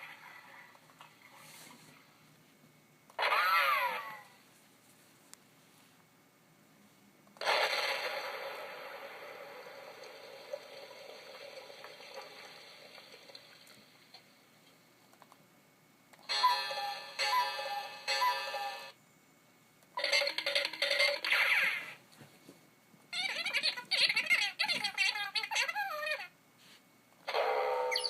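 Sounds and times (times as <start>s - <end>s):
long noisy cartoon sound effect: 3.2s - 4.4s, 16.3s - 19.0s.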